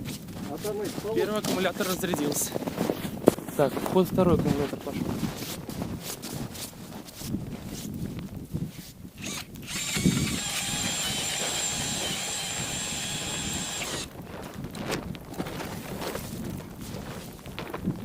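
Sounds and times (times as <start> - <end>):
cordless drill boring through ice: 9.2 - 14.1.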